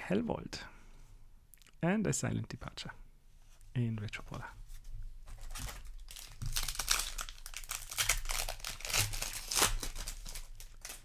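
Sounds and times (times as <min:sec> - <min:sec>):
foil wrapper crinkling: 0:05.3 - 0:11.0.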